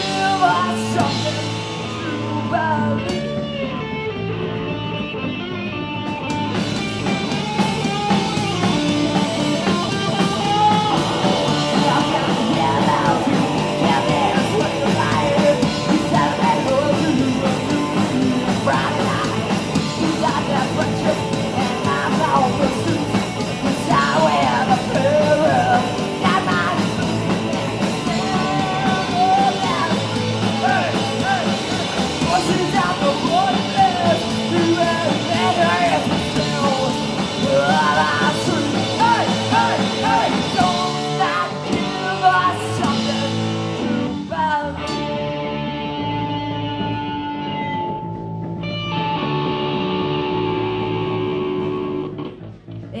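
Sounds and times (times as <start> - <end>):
person shouting singing: 0.0 - 3.2, 9.6 - 44.8
punk rock band playing: 0.0 - 53.0.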